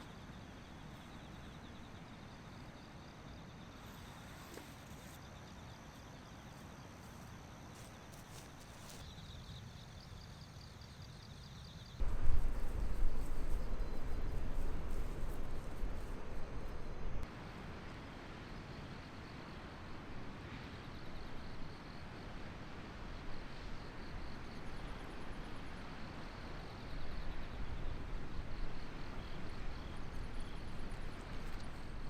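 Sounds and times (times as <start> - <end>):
insects chirping: 0.0 - 32.0
wind buffeting microphone: 12.0 - 17.2.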